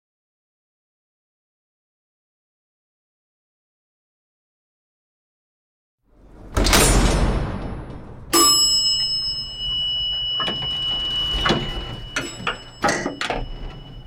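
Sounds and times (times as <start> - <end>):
heavy slam: 6.2 - 8.4
mechanical knocks and clanks: 6.2 - 8.4, 9.7 - 14.0
elevator chime ding: 8.3 - 14.0.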